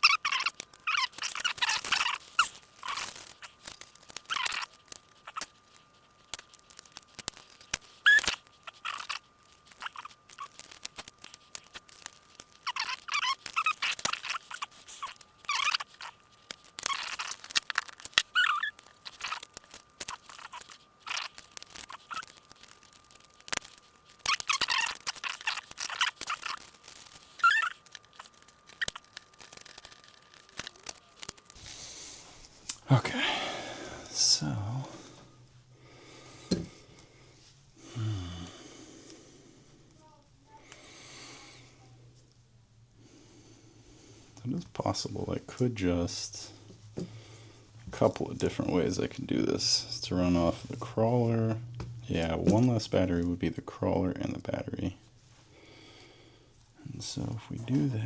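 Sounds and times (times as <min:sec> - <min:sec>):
plastic parts rustling and crinkling: 0:00.0 - 0:32.9, 0:44.4 - 0:55.4, 0:56.5 - 0:58.0.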